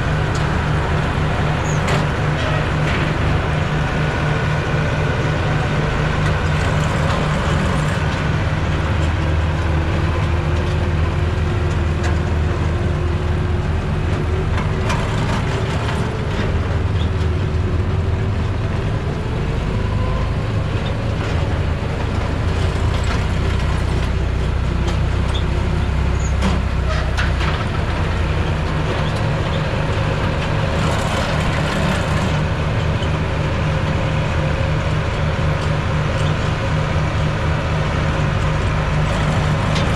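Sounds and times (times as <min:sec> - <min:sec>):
tractor engine running: 0:00.0 - 0:39.9
hay equipment clanking: 0:26.2 - 0:33.4, 0:38.2 - 0:39.9.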